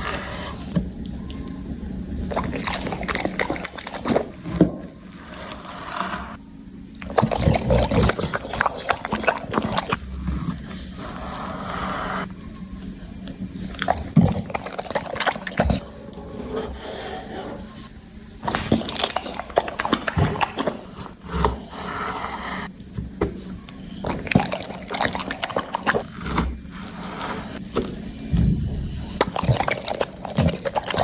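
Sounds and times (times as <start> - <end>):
dog chewing food: 2.2 - 4.6, 18.4 - 21.1, 24.0 - 26.6, 29.2 - 31.0.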